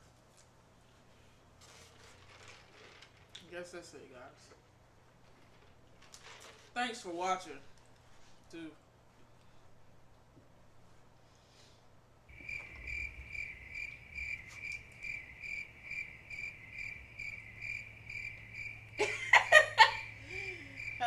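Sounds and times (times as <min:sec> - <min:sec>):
cricket chirping: 0:12.3 - 0:21.0.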